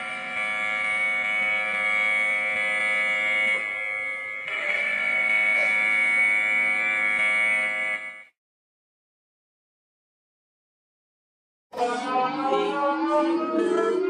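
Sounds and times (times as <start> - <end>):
slowed buzzing alarm chord: 0.0 - 8.4, 11.8 - 14.0.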